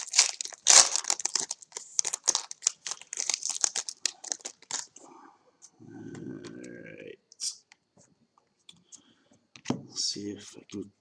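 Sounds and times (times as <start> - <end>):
plastic wrapper crinkling: 0.0 - 5.0.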